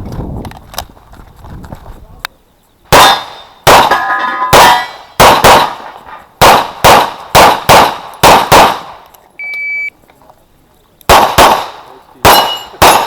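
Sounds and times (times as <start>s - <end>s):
pistol shots: 2.9s - 5.8s, 6.4s - 9.0s, 11.1s - 13.0s.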